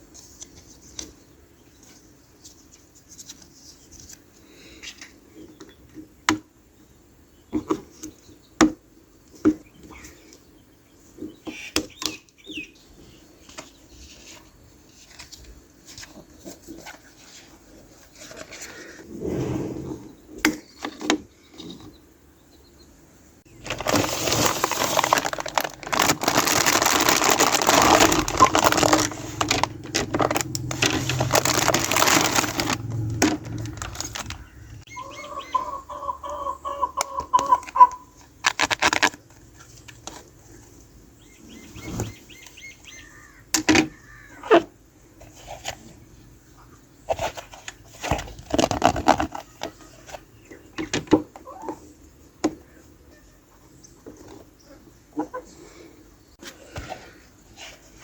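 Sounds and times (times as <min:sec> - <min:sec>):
packaging rustling and crinkling: 0:23.5 - 0:34.8, 0:38.3 - 0:40.2, 0:47.2 - 0:49.7
plastic parts clicking: 0:23.6 - 0:34.5
plastic rubbing squeak: 0:23.6 - 0:34.8.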